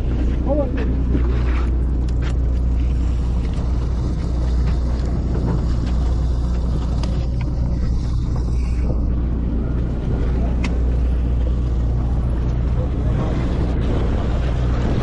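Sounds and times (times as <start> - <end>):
boat engine rumbling: 0.0 - 15.0.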